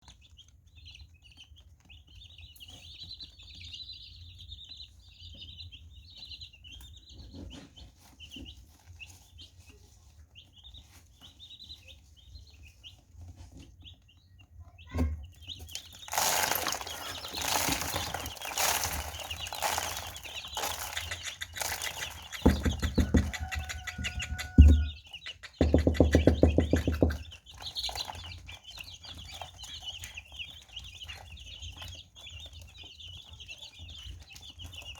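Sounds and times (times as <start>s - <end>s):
baby chicks peeping: 0.0s - 34.9s
rustling and scratching: 6.8s - 14.2s, 14.9s - 34.9s.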